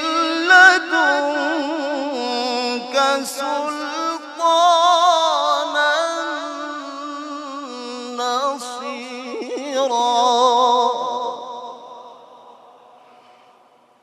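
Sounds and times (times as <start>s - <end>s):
man chanting recitation: 0.0s - 12.6s.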